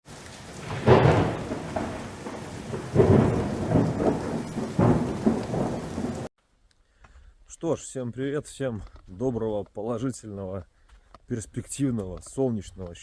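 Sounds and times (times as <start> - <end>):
steady rain: 0.0 - 6.3
thunder rumbling: 0.1 - 6.3.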